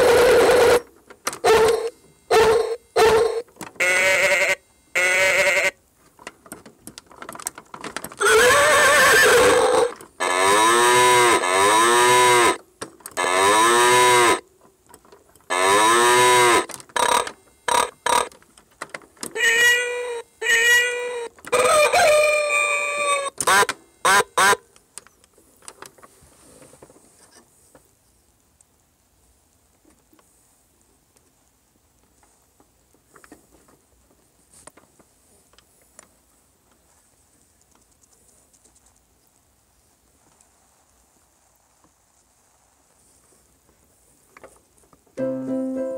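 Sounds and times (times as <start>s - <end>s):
toy playing farm animal calls: 0.0s - 5.8s, 8.2s - 12.6s, 13.2s - 14.4s, 15.5s - 18.3s, 19.3s - 24.7s.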